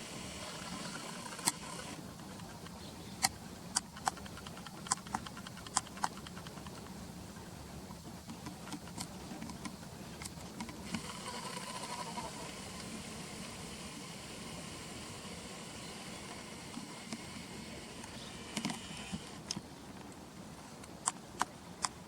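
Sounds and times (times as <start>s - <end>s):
low background hum: 0.0s - 22.0s
swallows calling: 15.2s - 16.6s, 17.3s - 18.6s.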